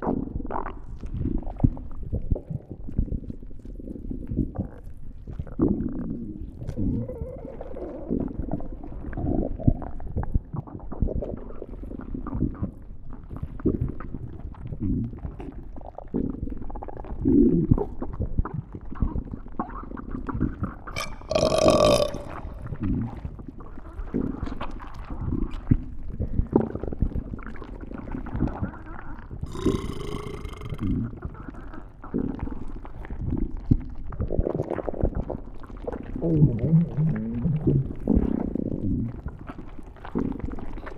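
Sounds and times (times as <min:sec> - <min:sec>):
stomach growling and gurgling: 0:00.0 - 0:40.9
squealing stomach growl: 0:06.0 - 0:09.6, 0:20.9 - 0:23.2, 0:28.4 - 0:32.7, 0:36.0 - 0:40.7.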